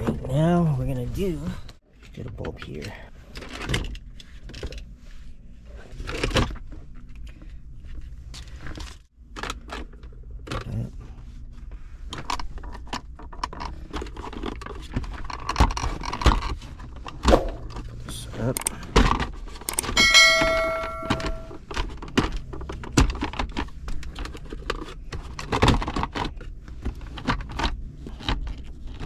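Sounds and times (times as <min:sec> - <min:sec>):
low steady hum: 0:19.8 - 0:21.6.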